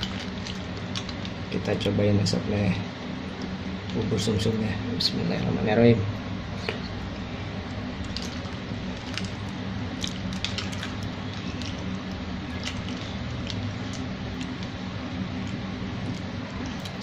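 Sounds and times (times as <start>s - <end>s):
steady low hum: 0.0s - 17.0s
soft wet eating sounds: 8.0s - 17.0s.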